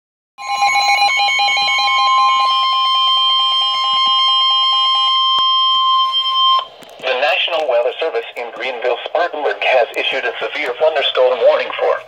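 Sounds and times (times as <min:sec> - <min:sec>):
pulsing beeps: 0:00.4 - 0:06.8
loud steady high alert tone: 0:00.4 - 0:07.4.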